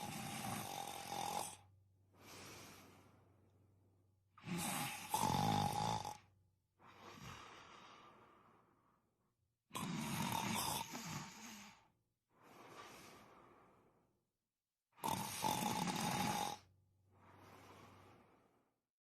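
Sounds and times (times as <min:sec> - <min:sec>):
person snoring: 0:00.0 - 0:03.2, 0:04.4 - 0:08.2, 0:09.7 - 0:11.9, 0:14.9 - 0:16.7
soft breath: 0:02.1 - 0:04.0, 0:06.8 - 0:09.2, 0:10.9 - 0:14.2, 0:17.1 - 0:18.8.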